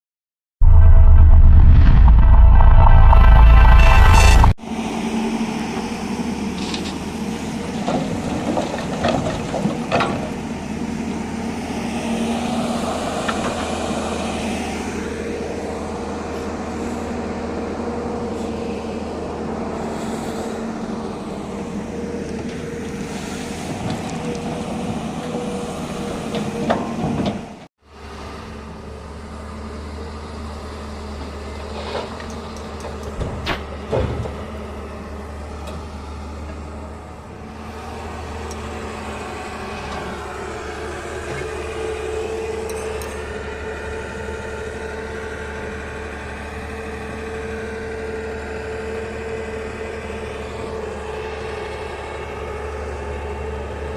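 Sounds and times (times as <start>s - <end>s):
excavator diesel engine running: 27.9s - 53.9s.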